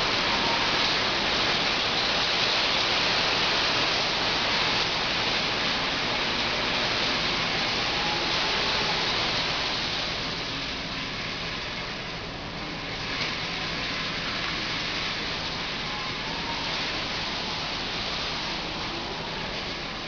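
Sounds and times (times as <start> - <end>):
humidifier airy rushing: 0.0 - 20.0.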